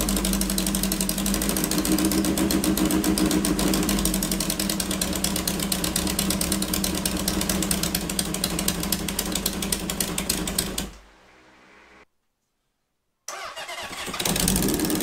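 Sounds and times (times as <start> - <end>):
motorcycle engine running: 0.0 - 11.0, 14.0 - 15.0.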